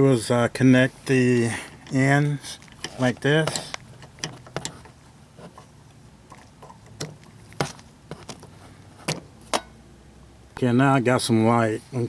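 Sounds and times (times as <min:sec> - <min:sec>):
hardware clicks and knocks: 0:02.6 - 0:05.0.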